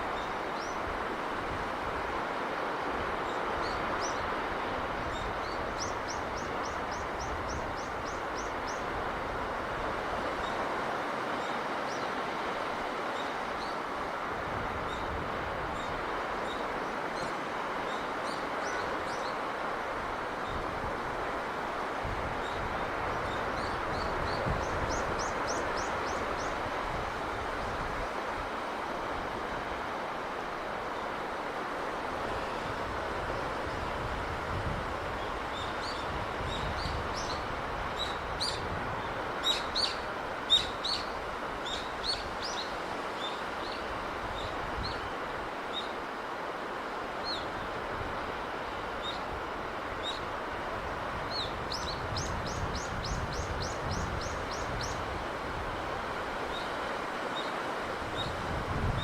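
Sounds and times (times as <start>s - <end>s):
sea breeze rushing: 0.0s - 59.0s.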